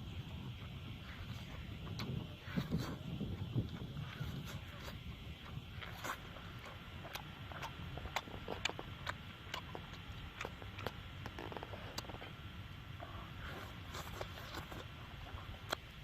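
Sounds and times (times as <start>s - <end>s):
low steady rumble: 0.0s - 16.0s.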